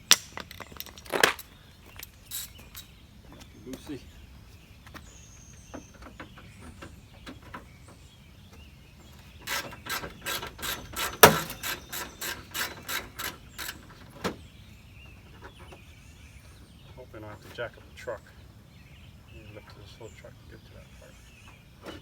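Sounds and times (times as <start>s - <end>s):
ratchet clicking: 9.4s - 13.8s.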